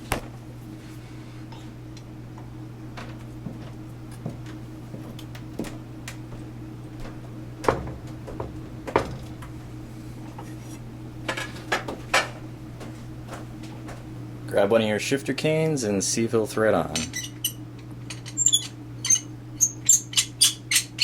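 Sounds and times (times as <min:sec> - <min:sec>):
steady low hum: 0:00.0 - 0:21.0
glass and metal parts clicking: 0:17.0 - 0:21.0.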